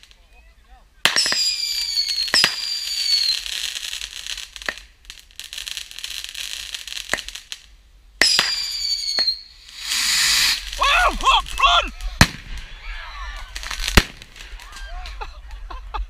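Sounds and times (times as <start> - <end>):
firework whistle: 1.0 - 3.6, 8.2 - 10.9
firework crackling hiss: 1.0 - 14.9
firework bangs: 1.0 - 15.0.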